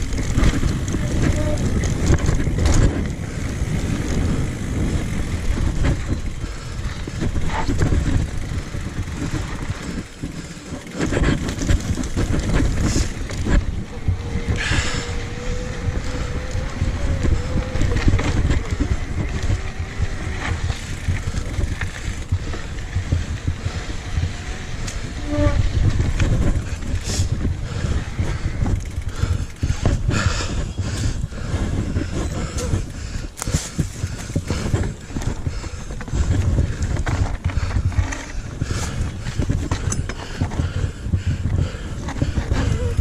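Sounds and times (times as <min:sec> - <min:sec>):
bike rattling knocks: 0:00.0 - 0:13.8
bike tyre noise: 0:00.0 - 0:43.0
wind over microphone: 0:00.0 - 0:43.0.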